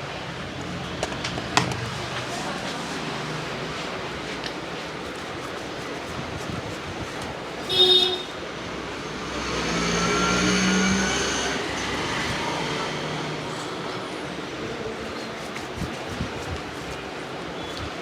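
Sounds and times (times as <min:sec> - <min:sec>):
vehicle passing: 0:07.8 - 0:15.0.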